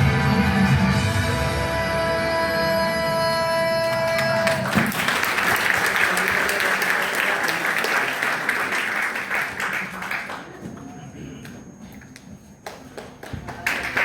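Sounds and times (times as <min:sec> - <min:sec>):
audience applause: 0:03.8 - 0:10.7, 0:12.6 - 0:14.0.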